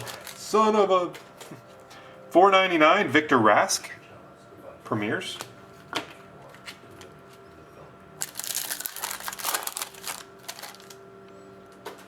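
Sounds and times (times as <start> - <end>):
trading cards and wrapping rustling: 0.0 - 1.6, 8.2 - 11.0
faint steady hum: 0.0 - 12.0.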